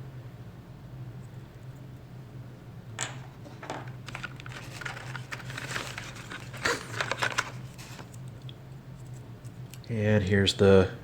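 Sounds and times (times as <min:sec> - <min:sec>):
packaging crinkling: 0:03.9 - 0:08.2.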